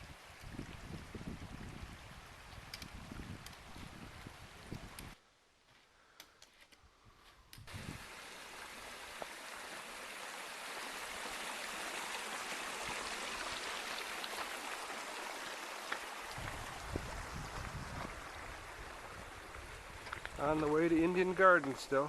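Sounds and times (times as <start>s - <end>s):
creek rushing and splashing: 7.7s - 22.0s.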